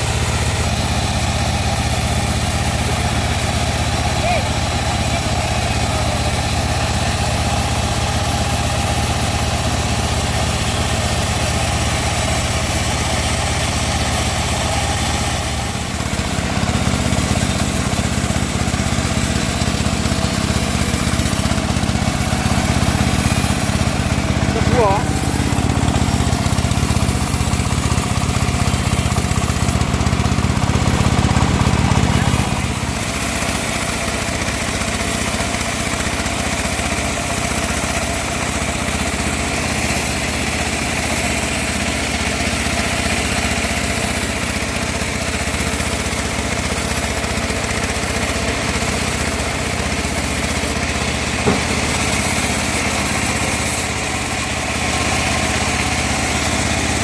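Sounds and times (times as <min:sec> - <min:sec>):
bandsaw sawing wood: 0:00.0 - 0:57.0
short knock: 0:51.4 - 0:51.7.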